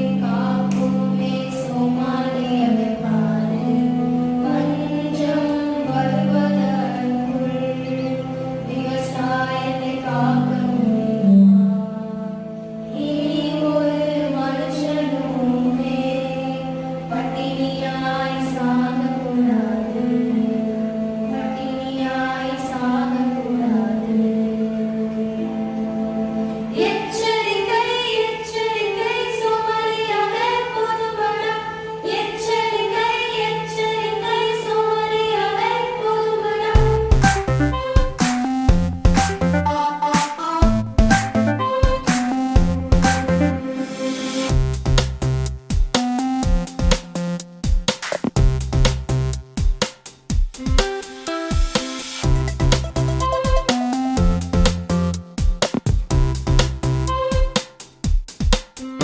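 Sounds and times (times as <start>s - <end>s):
long held sung notes: 0.0s - 44.5s
person singing: 26.7s - 44.6s, 50.6s - 55.2s, 56.8s - 57.7s.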